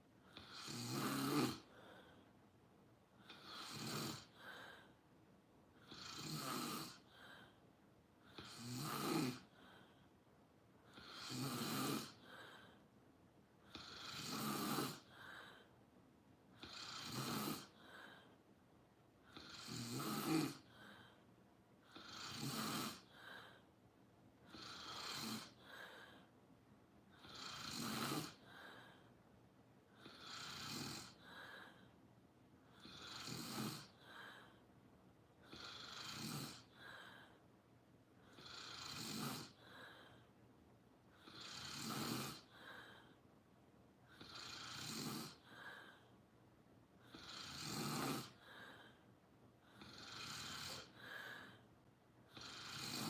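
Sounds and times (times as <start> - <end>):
person snoring: 0.3 - 2.2, 3.2 - 5.0, 5.8 - 7.6, 8.3 - 9.9, 10.9 - 12.8, 13.6 - 15.7, 16.6 - 18.3, 19.3 - 21.2, 21.8 - 23.6, 24.5 - 26.3, 27.1 - 29.1, 30.0 - 31.9, 32.7 - 34.6, 35.4 - 37.4, 38.2 - 40.2, 41.2 - 43.2, 44.1 - 46.1, 47.0 - 49.0, 49.6 - 51.6, 52.3 - 53.0
soft breath: 1.6 - 3.6, 4.2 - 6.0, 6.8 - 8.6, 9.4 - 11.2, 12.1 - 14.0, 14.9 - 16.7, 17.6 - 19.5, 20.5 - 22.2, 22.9 - 27.6, 28.2 - 33.1, 33.7 - 38.5, 39.4 - 41.4, 42.4 - 44.4, 45.2 - 47.3, 48.2 - 53.0.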